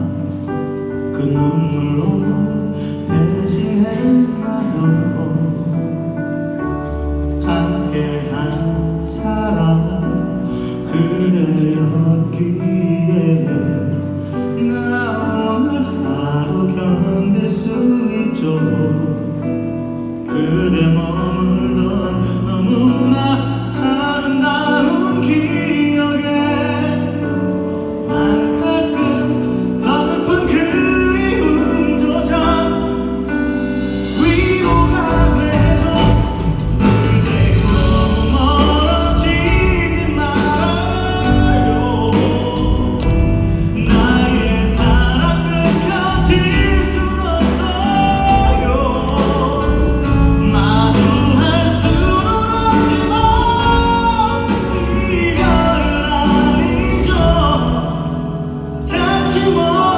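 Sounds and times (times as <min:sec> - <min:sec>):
band playing a pop ballad: 0:00.0 - 0:59.9
person singing: 0:06.8 - 0:19.6, 0:20.2 - 0:59.9.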